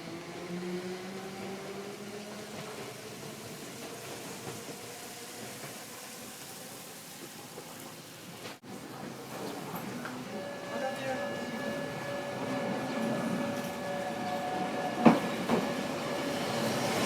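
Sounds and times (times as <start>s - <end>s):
tram running noise: 0.0s - 17.0s
tram motor whine: 8.8s - 17.0s.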